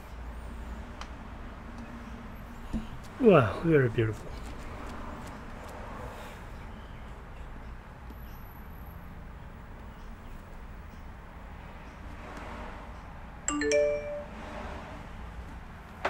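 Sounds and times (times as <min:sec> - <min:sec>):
computer startup chime: 0:13.5 - 0:14.4.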